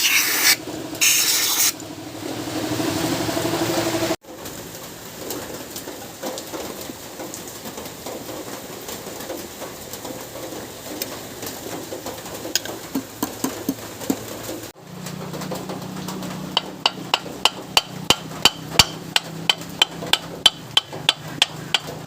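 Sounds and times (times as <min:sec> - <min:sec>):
harsh rasping noise: 0:00.0 - 0:01.8.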